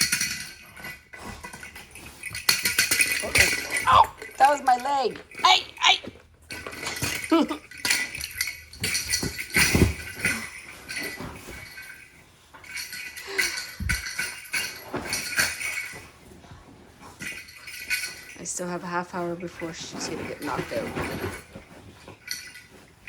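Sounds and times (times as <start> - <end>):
cat toy jingling: 0.0 - 16.3, 17.0 - 23.0.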